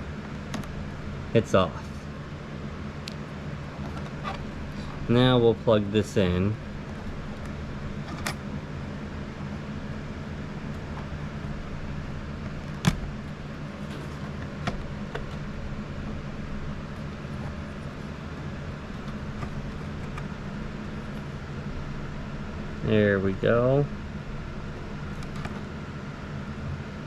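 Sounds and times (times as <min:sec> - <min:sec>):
low machine hum: 0:00.0 - 0:27.0.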